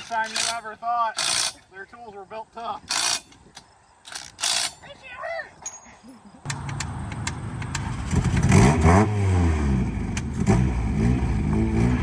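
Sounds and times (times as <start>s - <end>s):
sharp clicks: 6.4s - 8.5s
car engine revving: 7.6s - 12.0s.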